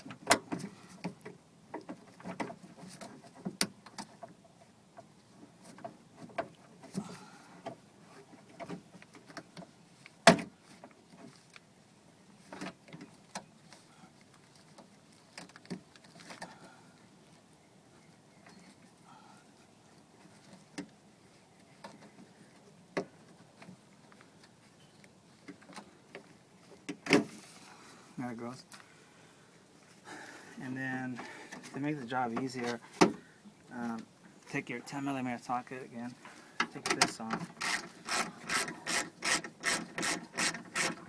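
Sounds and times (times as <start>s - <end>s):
hands working plastic and metal parts: 36.6s - 41.0s.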